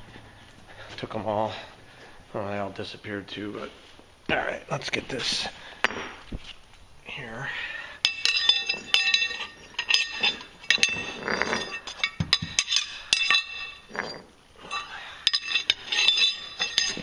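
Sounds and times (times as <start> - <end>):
metal-on-metal taps ringing: 8.0 - 11.1, 11.7 - 13.8, 14.7 - 17.0.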